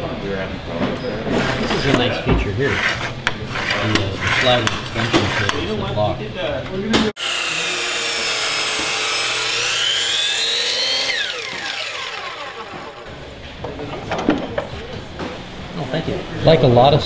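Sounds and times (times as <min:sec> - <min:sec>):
chop saw motor whine: 0:07.2 - 0:13.3.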